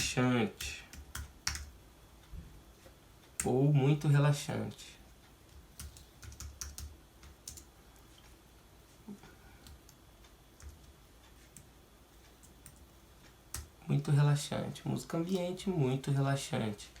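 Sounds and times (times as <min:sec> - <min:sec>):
faint keyboard typing: 0:00.0 - 0:01.8, 0:04.7 - 0:08.4, 0:09.4 - 0:15.6.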